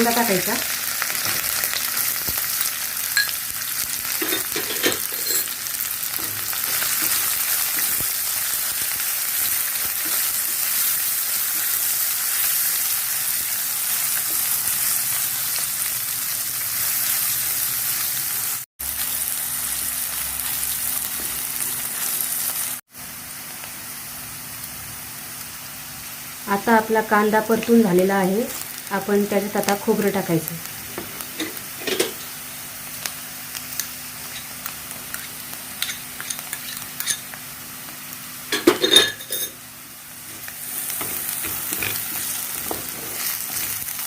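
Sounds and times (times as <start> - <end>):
onion sizzling in hot oil: 0.0 - 44.0
spoon stirring: 35.1 - 37.3.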